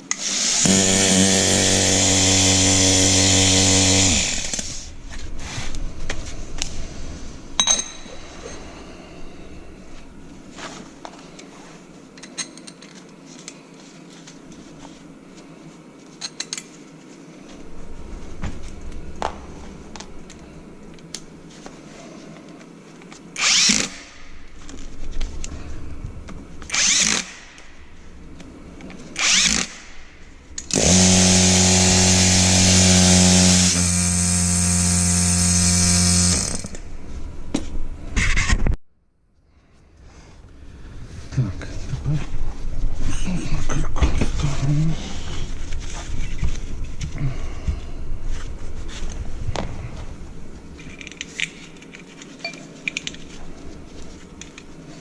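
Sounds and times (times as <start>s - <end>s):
electric motor running: 0.2s - 4.9s, 30.7s - 36.8s.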